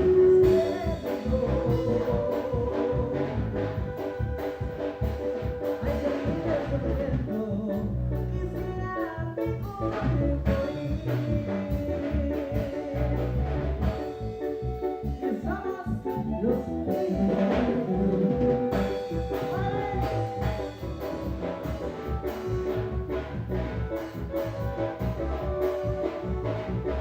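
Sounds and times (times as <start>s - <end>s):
person singing: 0.0s - 4.5s, 5.6s - 22.7s
live band with drums and brass: 0.0s - 27.0s.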